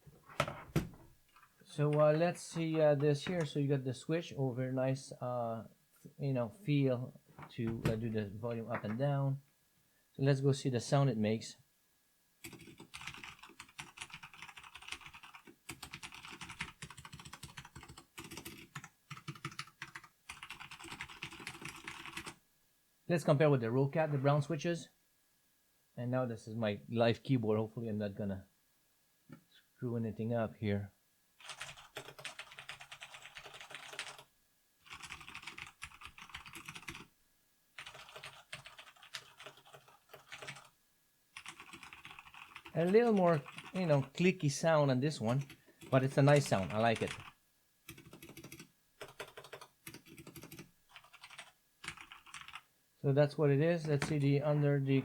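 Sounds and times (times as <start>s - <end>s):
typing on mechanical keyboard: 12.5s - 22.4s, 31.4s - 34.3s, 34.9s - 37.1s, 37.8s - 40.7s, 41.4s - 42.7s, 43.3s - 43.8s, 46.3s - 47.3s, 47.9s - 52.6s.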